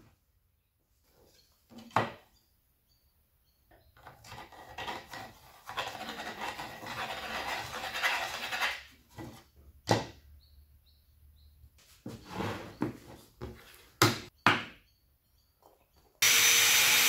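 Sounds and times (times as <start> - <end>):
wood scraping against wood: 4.0 - 9.5, 12.1 - 14.0.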